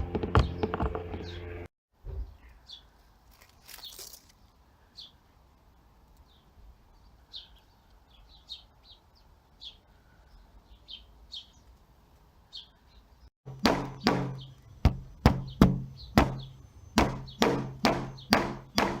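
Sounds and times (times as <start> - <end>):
faint small bird chirps: 2.0 - 5.3
loud sharp ringing knocks: 13.5 - 19.0.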